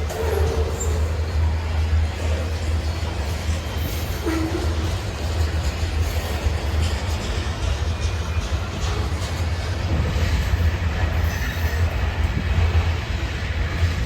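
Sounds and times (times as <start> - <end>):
train rumbling by: 0.0 - 14.0.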